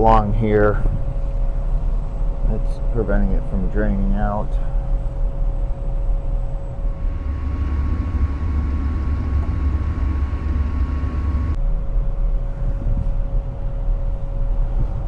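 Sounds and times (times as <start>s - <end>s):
hvac equipment humming: 4.4s - 11.6s
low drone with higher whine: 5.2s - 11.6s
thin steady tone: 7.0s - 11.6s.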